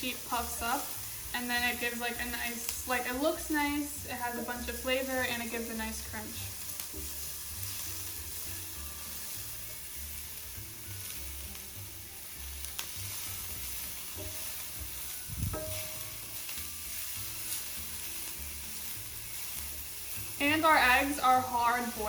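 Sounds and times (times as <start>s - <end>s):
onions sizzling in a frying pan: 0.0s - 22.0s.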